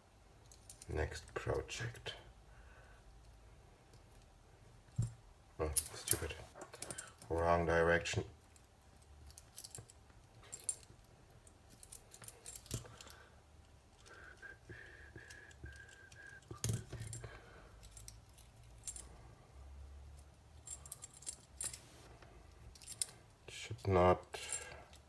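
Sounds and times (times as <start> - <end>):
metal parts clicking and clinking: 4.9 - 7.3, 8.5 - 13.1, 15.5 - 19.3, 20.1 - 25.0.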